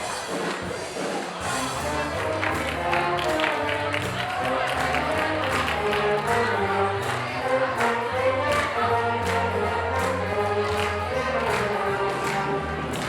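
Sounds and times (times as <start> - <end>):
bass line and beat: 1.5 - 13.0
group of voices singing: 3.6 - 13.0.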